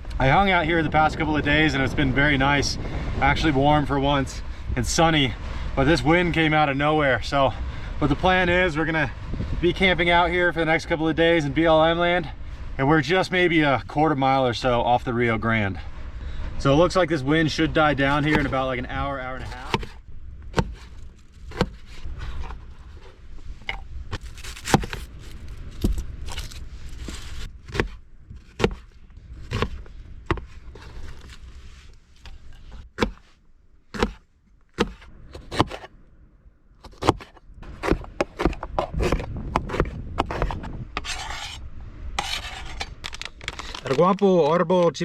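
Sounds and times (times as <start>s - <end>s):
wind buffeting microphone: 0.0s - 31.6s, 36.9s - 43.9s
cooking gear knocking and scraping: 19.3s - 31.5s, 34.0s - 35.9s, 36.8s - 41.6s, 42.2s - 44.1s
food packages being handled: 24.1s - 28.9s, 42.2s - 44.2s.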